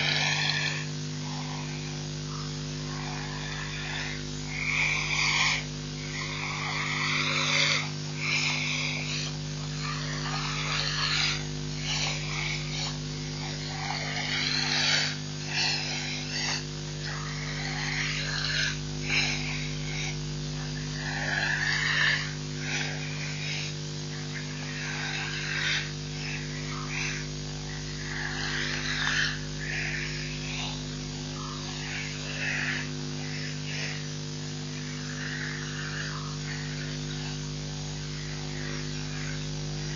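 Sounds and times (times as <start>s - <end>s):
electrical hum: 0.0s - 39.9s.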